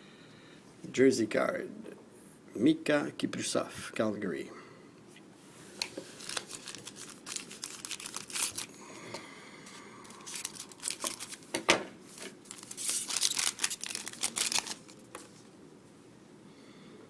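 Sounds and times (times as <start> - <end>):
foil wrapper tearing and crinkling: 6.2 - 8.7, 10.1 - 11.5, 12.2 - 15.4.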